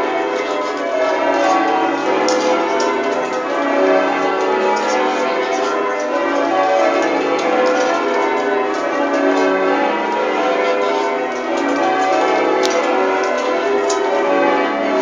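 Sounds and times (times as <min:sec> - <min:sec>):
tower bells change ringing: 0:00.0 - 0:15.0.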